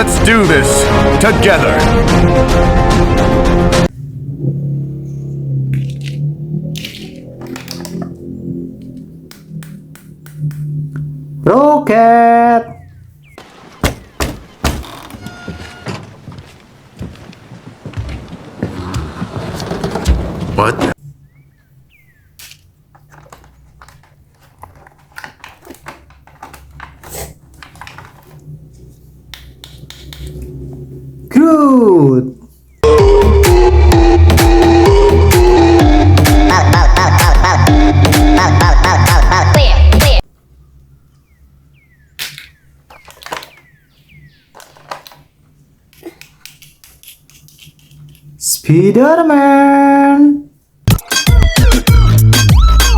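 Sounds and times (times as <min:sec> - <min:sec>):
plastic toy clicks and snaps: 0:06.8 - 0:08.1
downward-sliding squeaks: 0:13.4 - 0:21.0.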